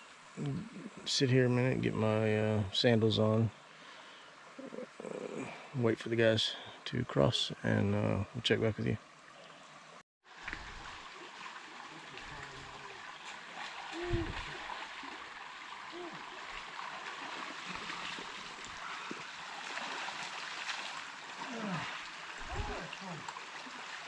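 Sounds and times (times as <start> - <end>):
creek running over rocks: 7.4 - 24.0.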